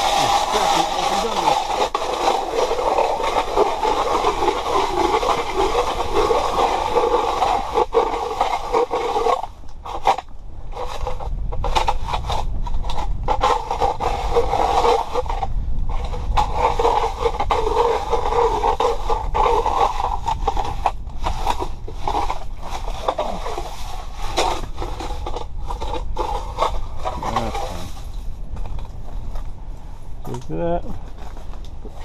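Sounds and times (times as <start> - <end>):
ice auger drilling through ice: 0.0 - 28.0.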